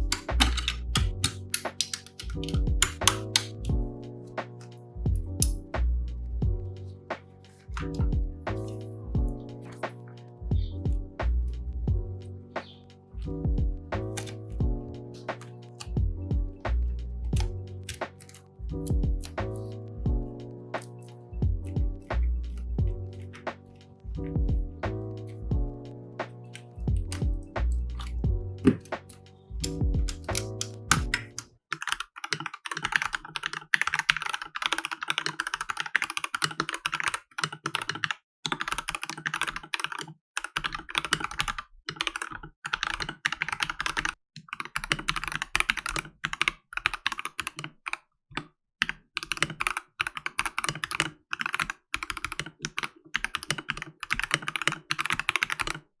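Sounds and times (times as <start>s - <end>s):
mechanical keyboard typing: 0.0s - 3.8s, 5.4s - 5.6s, 7.2s - 11.1s, 12.6s - 16.0s, 16.8s - 19.7s, 26.2s - 55.9s.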